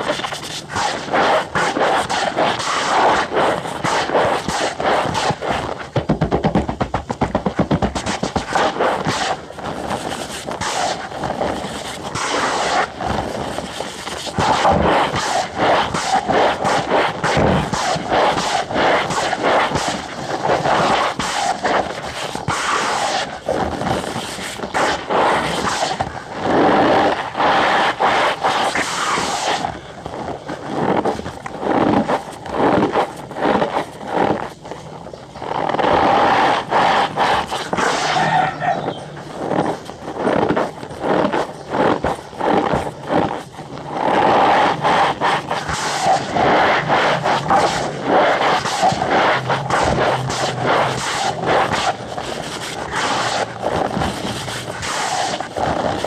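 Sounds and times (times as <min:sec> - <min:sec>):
cornstarch squeaky crunching: 0:29.5 - 0:56.0.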